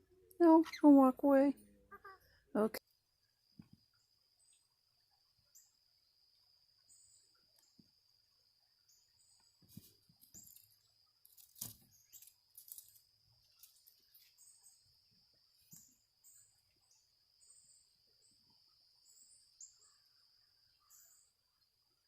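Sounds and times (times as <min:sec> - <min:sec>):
small pet birds chirping: 0:00.5 - 0:01.1.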